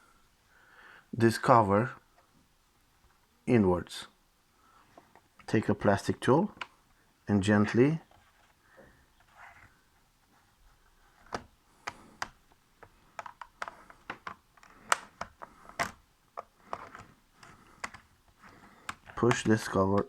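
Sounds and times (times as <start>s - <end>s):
plastic pry tool clicking: 11.3s - 18.1s.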